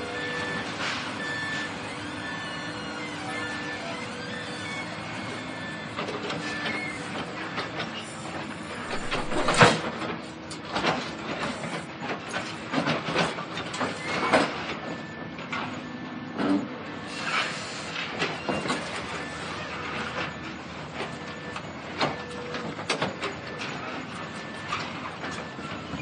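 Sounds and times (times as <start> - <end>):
demolition machine drone: 0.0 - 26.0.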